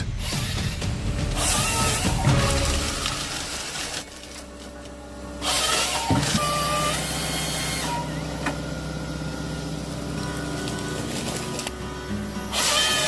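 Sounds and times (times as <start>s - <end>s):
rushing cutting noise: 0.0s - 6.0s
forestry machine engine running: 0.0s - 13.0s.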